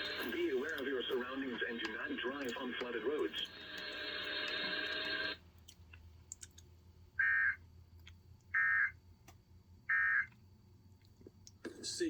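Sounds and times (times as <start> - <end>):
broadcast hiss: 0.0 - 5.4, 11.7 - 12.0.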